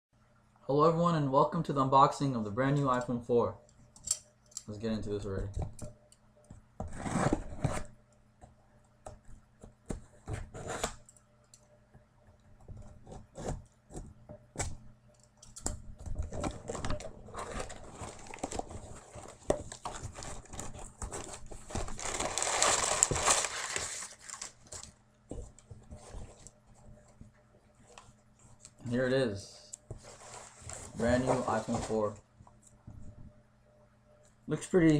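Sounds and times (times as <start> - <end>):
packaging torn and crinkled: 21.9 - 24.8.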